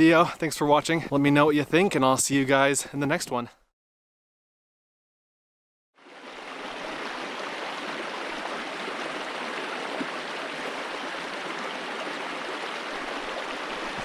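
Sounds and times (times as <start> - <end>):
mountain stream rushing: 6.0 - 14.0.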